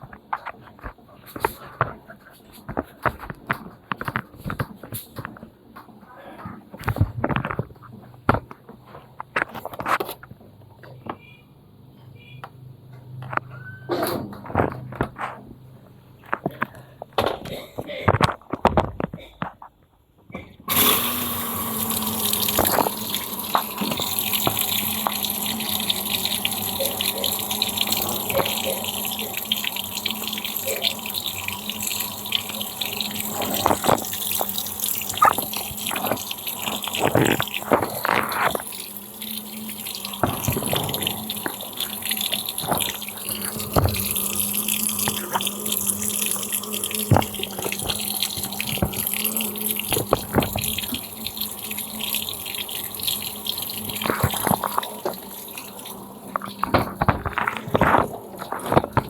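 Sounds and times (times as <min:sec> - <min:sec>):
water rushing into washing machine: 0:20.7 - 0:59.0.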